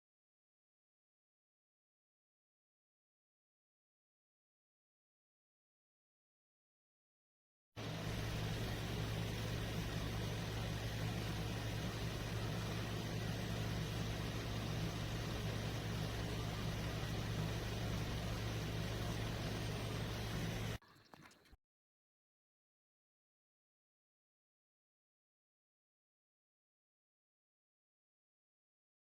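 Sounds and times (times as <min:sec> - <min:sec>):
humidifier humming and hissing: 0:07.8 - 0:20.8.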